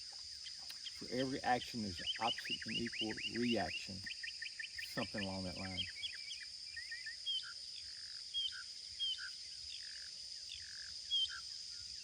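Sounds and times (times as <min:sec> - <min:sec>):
high-pitched insect drone: 0:00.0 - 0:12.0
birds chirping: 0:00.4 - 0:07.5.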